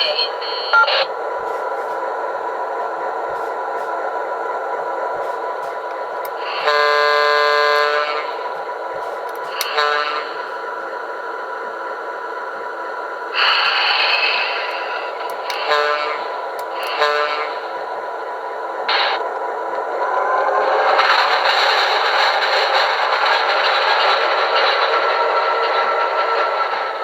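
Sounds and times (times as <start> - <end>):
diesel locomotive engine running: 0.0 - 27.0
train horn: 6.3 - 8.6, 9.6 - 10.5, 15.5 - 17.7.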